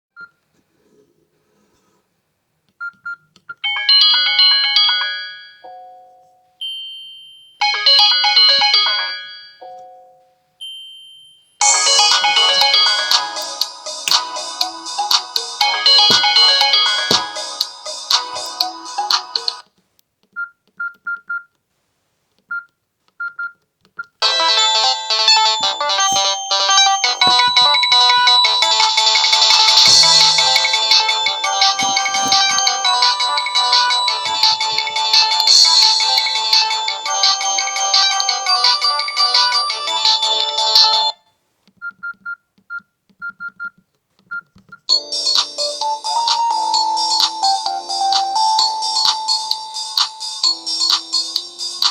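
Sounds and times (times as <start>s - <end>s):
polyphonic ringtone: 3.6s - 13.6s, 14.8s - 19.6s, 24.2s - 41.2s.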